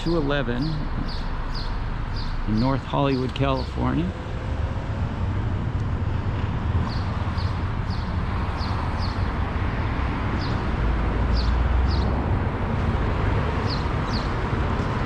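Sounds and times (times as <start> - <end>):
bird chirping: 0.0 - 4.1, 6.8 - 9.4, 11.3 - 12.2, 13.6 - 15.0
street traffic rumble: 0.0 - 15.0.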